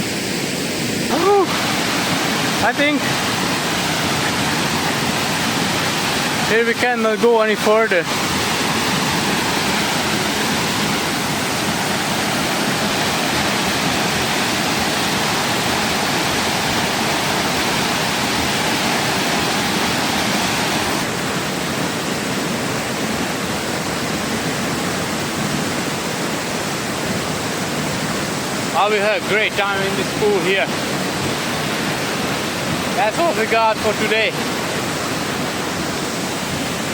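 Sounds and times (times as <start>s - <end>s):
waterfall rushing: 0.0s - 36.9s.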